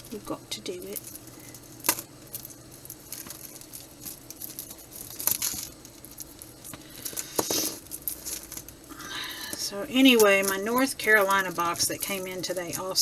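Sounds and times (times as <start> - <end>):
jewelry clicking and clinking: 0.0 - 13.0
packaging rustling: 0.0 - 13.0.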